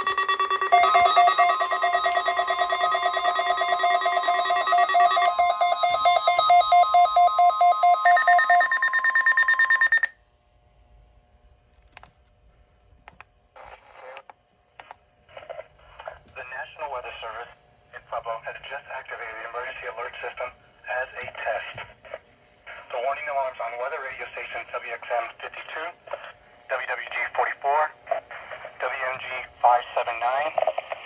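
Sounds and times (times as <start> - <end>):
rapidly pulsing beep: 0.0 - 10.1
shrill alarm tones: 0.0 - 10.1
faint hum: 0.0 - 31.0.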